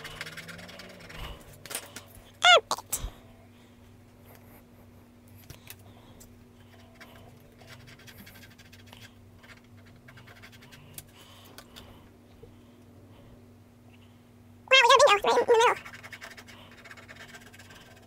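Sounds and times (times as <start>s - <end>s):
coin scraping scratch card: 0.0s - 1.4s, 15.7s - 18.0s.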